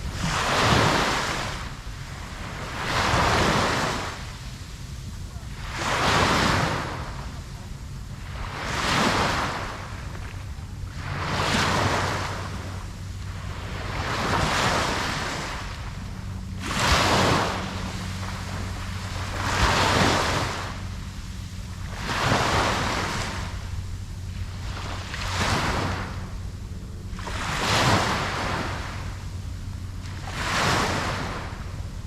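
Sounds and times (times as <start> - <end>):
ocean waves breaking: 0.0 - 32.0
steady low hum: 0.0 - 32.0.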